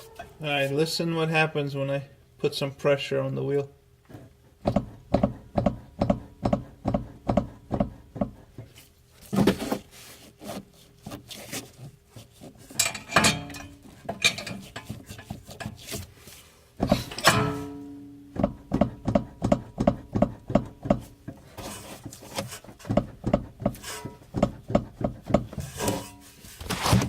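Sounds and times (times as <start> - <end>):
car suspension clunking: 16.8 - 26.2.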